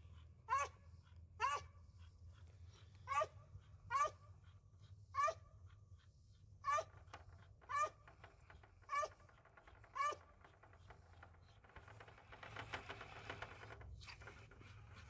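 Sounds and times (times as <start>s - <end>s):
dog barking: 3.1s - 3.3s, 3.9s - 4.2s.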